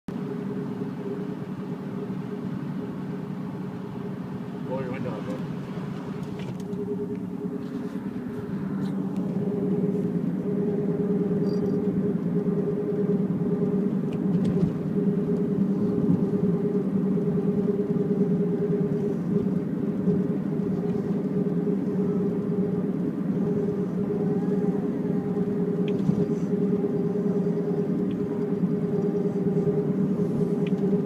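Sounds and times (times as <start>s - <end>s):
droning hum of moving car: 0.1s - 31.0s.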